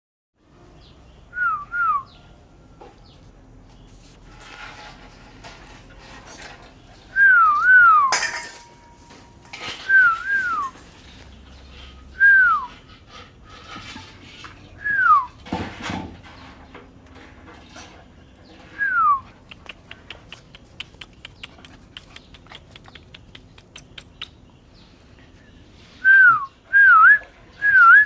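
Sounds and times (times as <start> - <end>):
light clinks and knocks: 8.1 - 9.9, 15.4 - 18.7.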